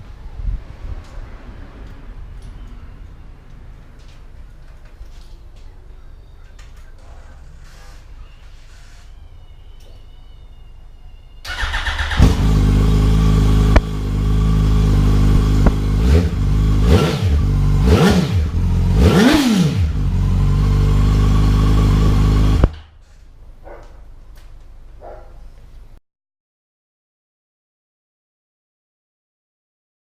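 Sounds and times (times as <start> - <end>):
starter cranking engine: 11.5 - 12.7.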